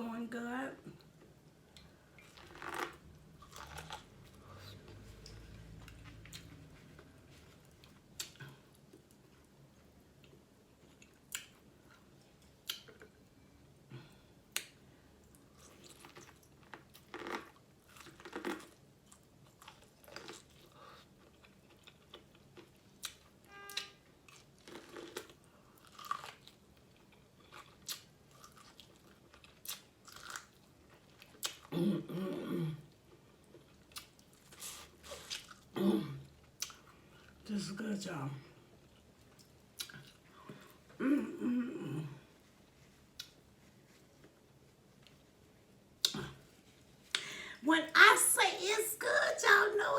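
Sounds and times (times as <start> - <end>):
chewing and biting seafood: 15.5 - 31.7.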